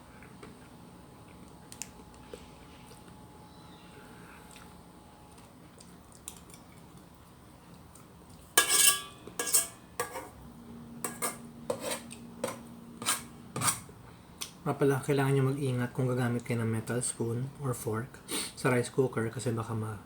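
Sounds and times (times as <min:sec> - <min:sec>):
metal spoon scraping a pot: 0:08.6 - 0:10.4, 0:11.0 - 0:13.9.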